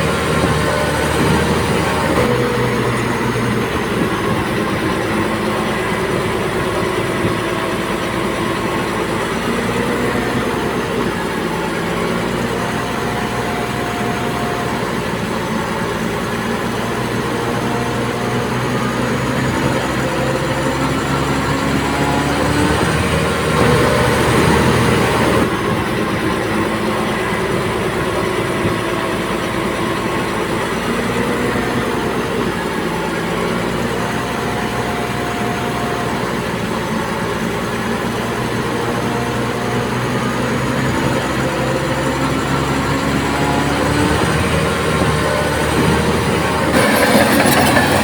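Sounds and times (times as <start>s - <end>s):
bulldozer diesel engine running: 0.0s - 48.0s
metallic clatter of steel tracks: 46.2s - 48.0s.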